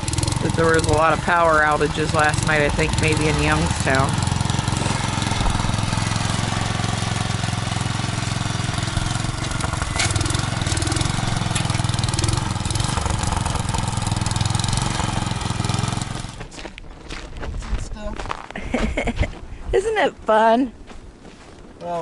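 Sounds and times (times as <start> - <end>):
small engine running: 0.0 - 16.5.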